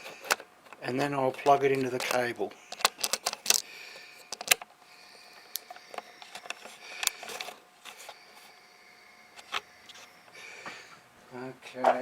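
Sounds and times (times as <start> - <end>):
cable rustling: 0.0 - 8.6, 9.3 - 10.8.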